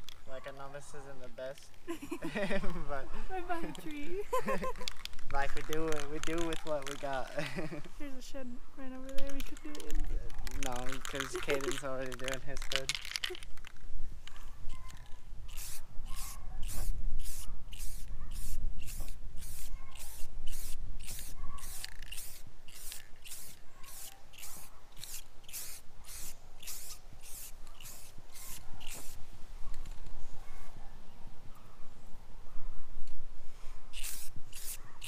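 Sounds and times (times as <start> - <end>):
spray gun hissing bursts: 15.5 - 29.2, 34.0 - 34.8.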